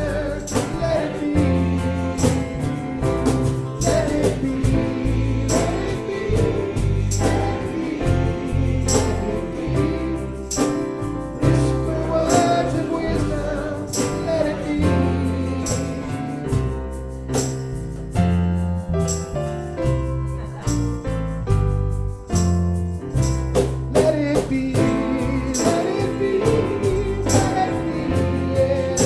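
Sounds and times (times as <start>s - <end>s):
voices singing: 0.0s - 3.0s, 3.8s - 16.6s, 24.0s - 29.0s
percussion beat: 0.0s - 29.0s.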